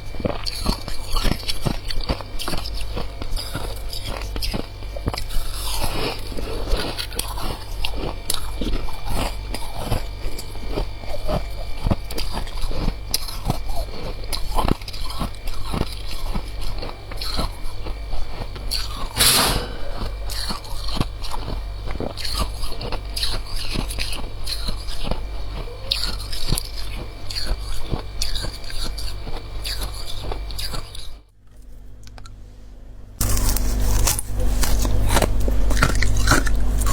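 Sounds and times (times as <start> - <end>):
crunchy chewing of frost: 0.0 - 31.8, 33.2 - 36.9
steady low hum: 13.1 - 36.9.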